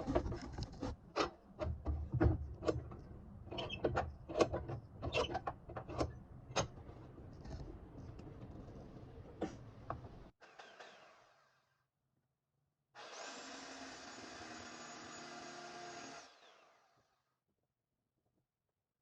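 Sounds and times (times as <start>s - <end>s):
sharp clicks and knocks: 0.0s - 10.3s.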